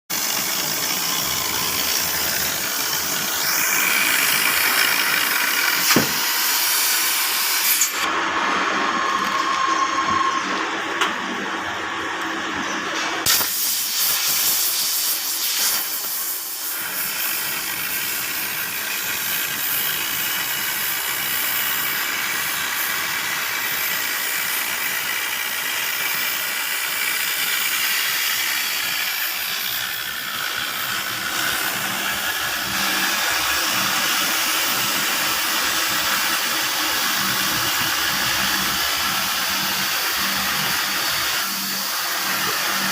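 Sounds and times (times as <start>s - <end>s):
cutting torch hissing: 0.1s - 10.8s, 13.0s - 42.9s.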